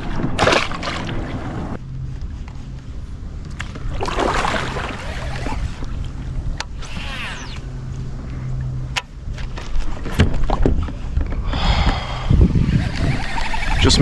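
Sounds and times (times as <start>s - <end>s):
steady low hum: 0.0s - 14.0s
water splashing: 0.4s - 1.6s, 3.9s - 6.1s
whirring sweep: 3.6s - 9.0s, 11.9s - 14.0s.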